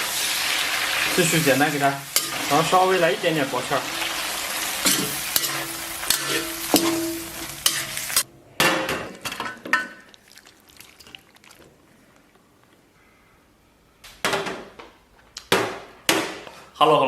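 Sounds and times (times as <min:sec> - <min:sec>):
food sizzling in a wok: 0:00.0 - 0:08.3
spatula scraping and clicking on pan: 0:03.9 - 0:08.2.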